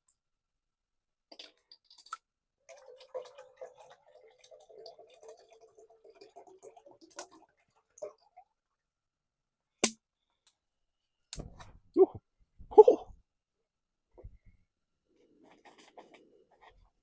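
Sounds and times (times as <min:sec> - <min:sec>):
water pouring into a pot: 0:01.3 - 0:08.8.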